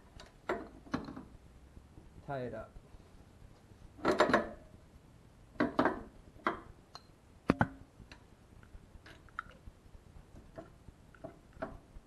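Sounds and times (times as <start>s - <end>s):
clicks knocks and rattles: 4.0s - 4.7s.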